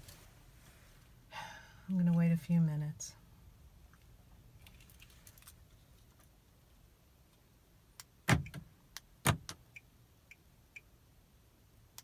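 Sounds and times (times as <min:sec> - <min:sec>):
keys clicking and jingling in ignition: 0:04.6 - 0:05.6.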